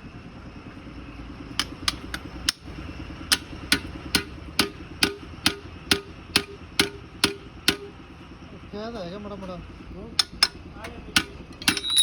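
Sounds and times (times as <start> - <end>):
hammer striking metal: 3.3 - 8.0, 10.2 - 12.0.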